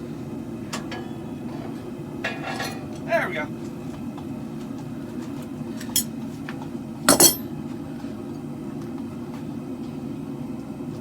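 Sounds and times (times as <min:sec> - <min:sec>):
propane forge roaring: 0:00.0 - 0:11.0
ringing metal clang: 0:00.8 - 0:03.1, 0:07.1 - 0:07.4.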